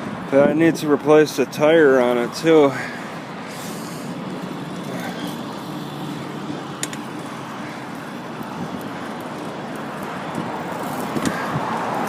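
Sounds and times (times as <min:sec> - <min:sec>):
road traffic passing cars: 0:00.0 - 0:12.0.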